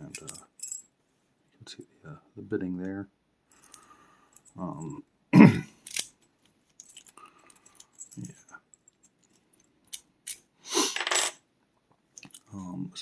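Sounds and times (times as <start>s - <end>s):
metal lock clinks and knocks: 0.0s - 0.8s, 5.8s - 10.4s.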